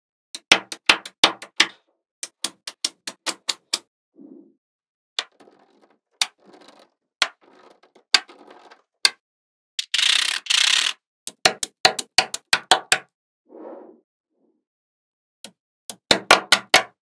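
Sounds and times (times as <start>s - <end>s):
magnetic balls rattling: 5.2s - 8.9s
magnetic balls clicking together: 9.8s - 13.0s.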